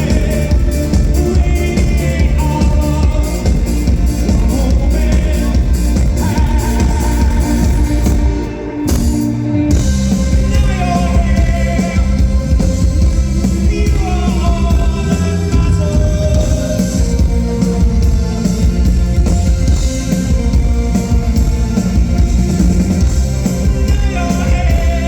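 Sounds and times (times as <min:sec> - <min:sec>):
person singing: 0:00.0 - 0:08.6, 0:10.4 - 0:17.7, 0:23.6 - 0:25.0
rock band playing live: 0:00.0 - 0:25.0.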